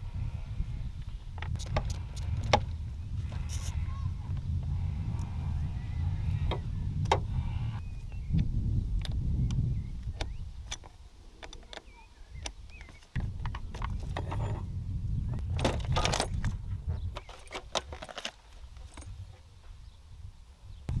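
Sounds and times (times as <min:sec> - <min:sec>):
low rumble: 0:00.0 - 0:10.0.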